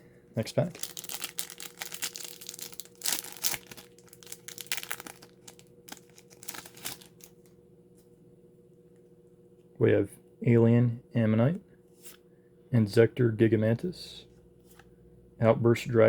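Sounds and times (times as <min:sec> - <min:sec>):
foil wrapper crinkling: 0:00.6 - 0:07.4.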